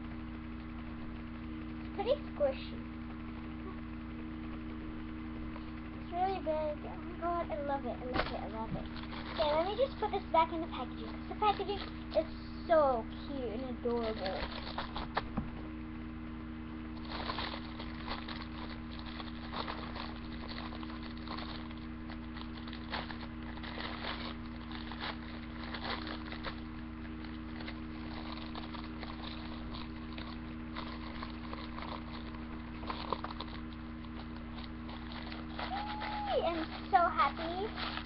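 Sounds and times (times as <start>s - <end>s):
low electrical hum: 0.0s - 38.0s
plastic packaging crinkling: 8.0s - 15.2s, 17.0s - 38.0s.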